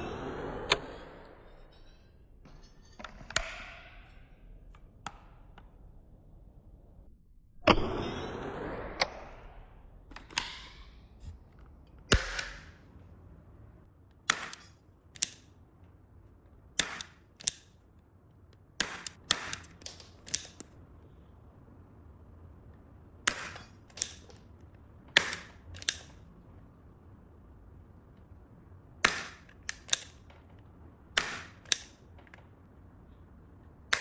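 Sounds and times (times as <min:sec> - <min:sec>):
toy revolver snaps: 0:12.1 - 0:12.8, 0:14.3 - 0:15.5, 0:16.8 - 0:17.8, 0:18.8 - 0:20.8, 0:25.2 - 0:26.2, 0:29.1 - 0:30.4, 0:31.2 - 0:32.4.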